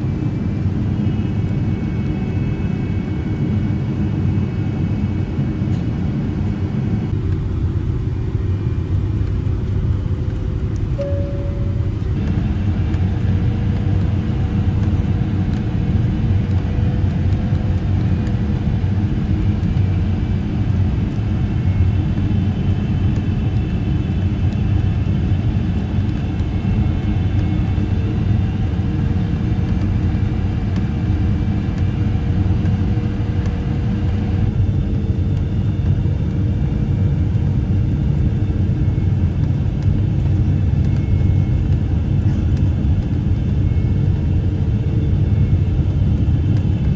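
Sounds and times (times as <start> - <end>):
airplane cabin rumble: 0.0 - 46.9
faint wavering engine tone: 10.7 - 46.9.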